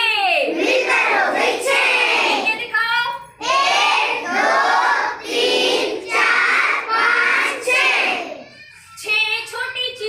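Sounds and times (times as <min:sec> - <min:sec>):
children chanting a counting rhyme: 0:00.5 - 0:02.5, 0:03.4 - 0:08.5.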